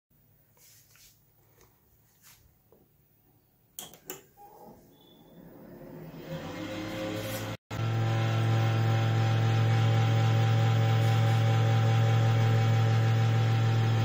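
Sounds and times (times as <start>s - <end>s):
computer fan whirring: 3.9s - 14.0s.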